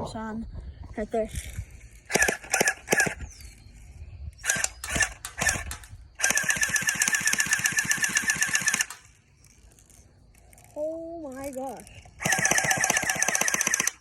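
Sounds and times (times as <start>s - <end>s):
airsoft gun firing: 2.1s - 3.3s, 4.4s - 9.1s, 12.2s - 14.0s.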